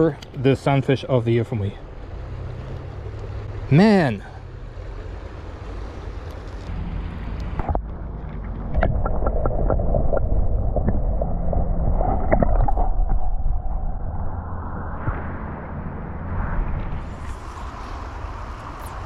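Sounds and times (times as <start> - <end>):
wind rumbling on microphone: 7.4 - 19.0
creek water gurgling: 8.6 - 14.3.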